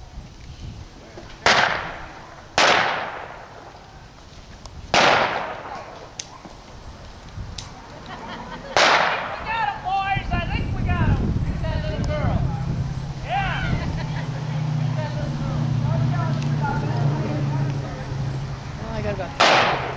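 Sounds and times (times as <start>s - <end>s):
gunshots with echo: 1.4s - 2.0s, 2.6s - 3.5s, 4.9s - 5.9s, 8.8s - 9.4s, 19.4s - 19.9s.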